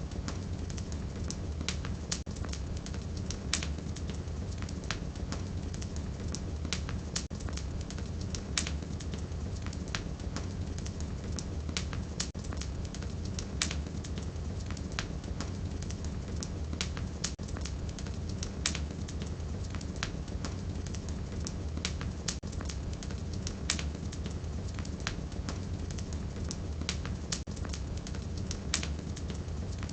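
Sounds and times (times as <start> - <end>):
fire crackling and popping: 0.0 - 29.9
low rumble of flames: 0.0 - 29.9.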